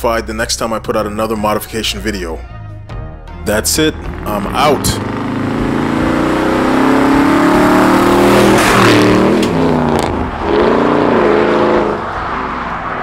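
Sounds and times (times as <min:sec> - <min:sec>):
engine revving deep exhaust: 0:04.0 - 0:13.0.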